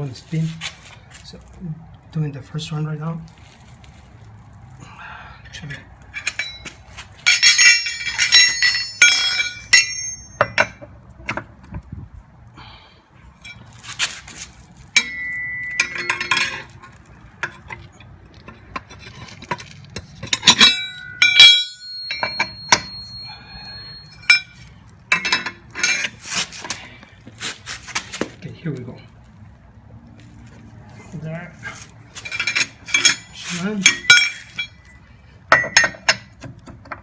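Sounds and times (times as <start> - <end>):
steel tools clanking on wheel nuts: 5.5 - 11.6, 13.3 - 28.4, 31.0 - 37.0.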